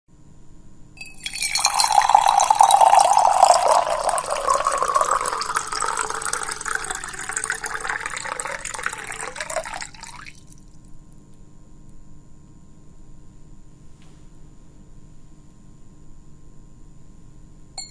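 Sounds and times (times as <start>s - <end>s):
water pouring into a glass: 1.0s - 10.6s.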